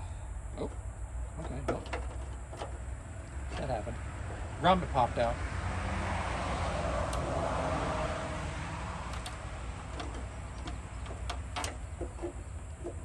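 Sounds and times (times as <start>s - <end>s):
wires scraping: 0.6s - 5.2s, 8.8s - 13.0s.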